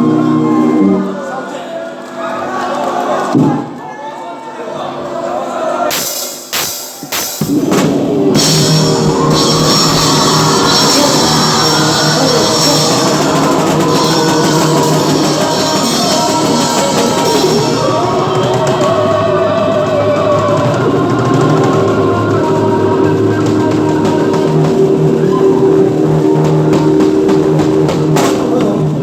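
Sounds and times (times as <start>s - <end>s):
drum hits: 5.9s - 29.0s
rock band playing loud: 5.9s - 29.0s.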